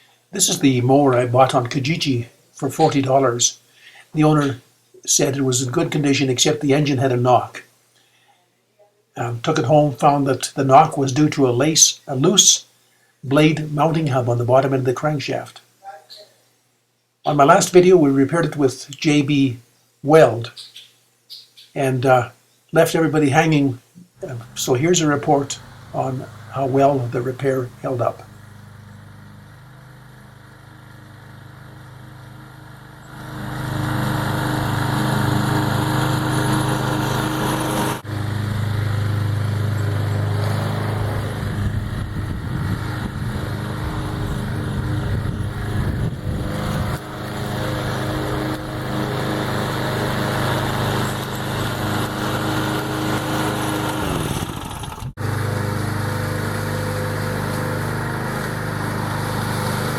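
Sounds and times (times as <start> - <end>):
lawn mower engine running: 0.4 - 3.4, 24.1 - 59.9.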